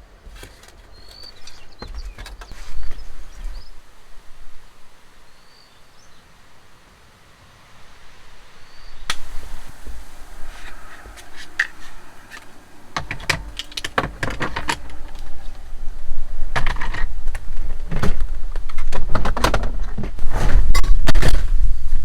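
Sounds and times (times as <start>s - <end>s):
low rumble: 9.0s - 21.2s
clicks knocks and rattles: 11.3s - 15.6s, 16.5s - 20.2s.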